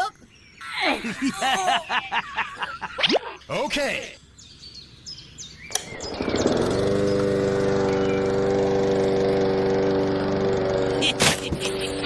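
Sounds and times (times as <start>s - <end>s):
engine starting and running: 4.7s - 12.0s
click: 5.7s - 5.9s.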